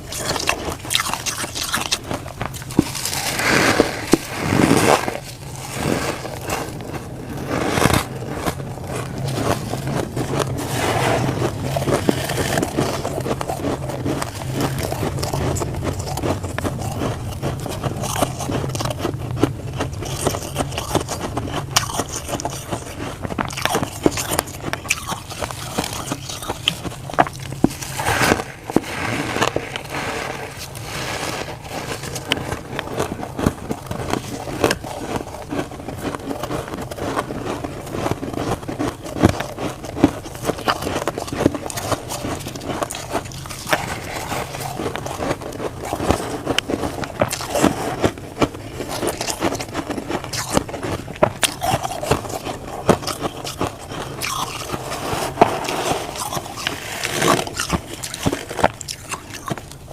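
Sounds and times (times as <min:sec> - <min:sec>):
crunchy frost being chewed: 0:00.0 - 0:59.9.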